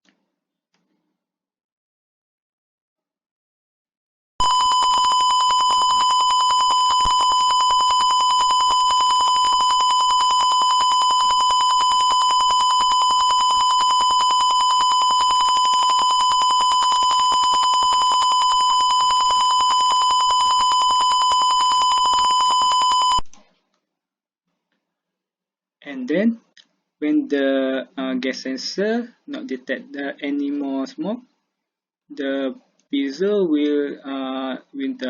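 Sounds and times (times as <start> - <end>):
high-pitched buzzer alarm tone: 4.4 - 23.2.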